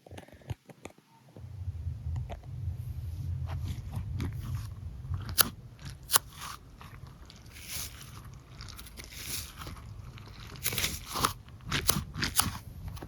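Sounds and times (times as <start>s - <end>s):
fidget toy crackling and crunching: 5.2s - 13.0s.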